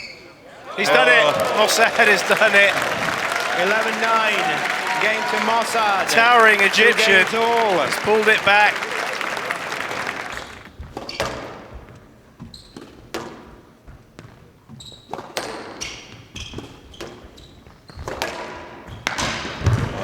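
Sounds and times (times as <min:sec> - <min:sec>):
shoes squeaking on court floor: 0:00.0 - 0:02.9, 0:12.4 - 0:13.3, 0:14.2 - 0:18.2
applause: 0:00.5 - 0:10.7
squash ball hitting rackets and walls: 0:12.4 - 0:20.0.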